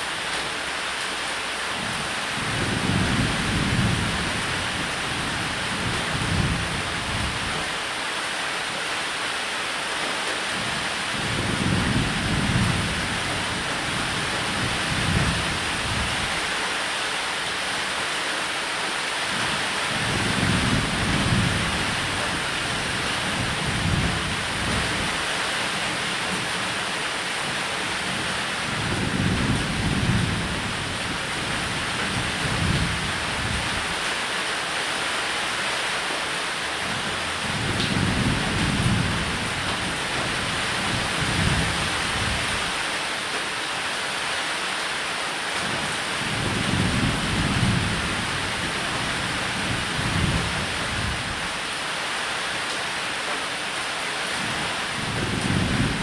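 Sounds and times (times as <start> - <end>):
heavy rain: 0.0 - 56.0
thunder rumbling: 28.0 - 34.0, 37.0 - 42.7, 55.0 - 56.0.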